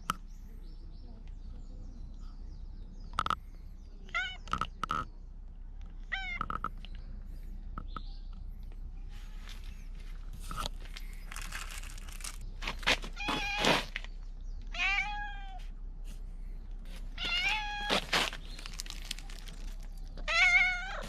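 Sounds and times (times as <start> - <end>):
cat meowing loudly: 14.7 - 15.6, 17.2 - 18.0, 20.2 - 21.0.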